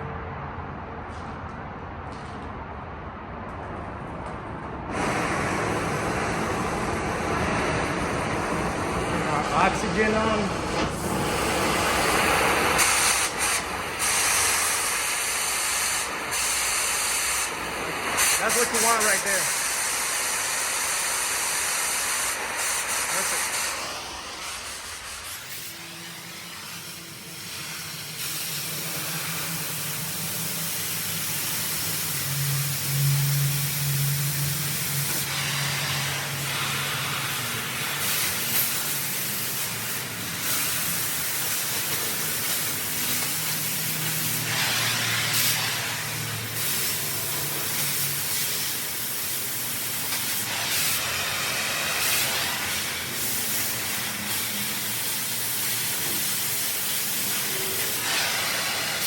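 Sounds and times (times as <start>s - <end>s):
torch flame hissing: 4.9s - 59.0s.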